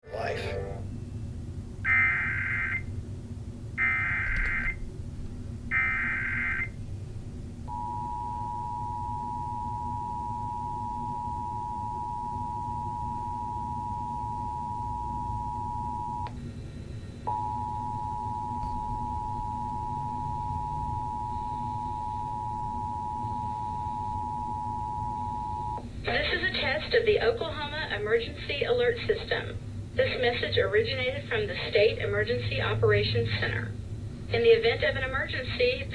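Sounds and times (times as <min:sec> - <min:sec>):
screeching data bursts: 0:05.7 - 0:06.8
two-tone attention signal: 0:07.7 - 0:16.3, 0:17.3 - 0:25.8.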